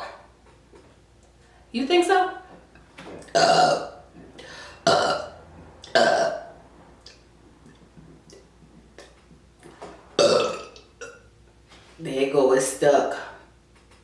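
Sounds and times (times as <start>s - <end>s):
woman burping: 0.0s - 0.3s, 3.2s - 6.5s, 10.2s - 11.3s.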